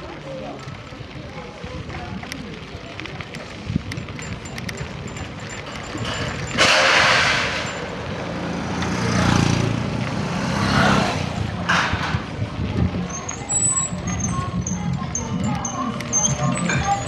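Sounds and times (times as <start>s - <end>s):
engine hum: 3.0s - 17.0s
traffic rushing past: 5.2s - 17.0s.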